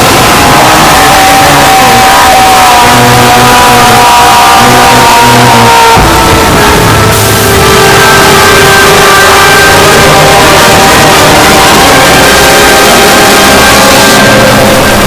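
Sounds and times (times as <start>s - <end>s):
heavily distorted music: 0.0s - 15.0s.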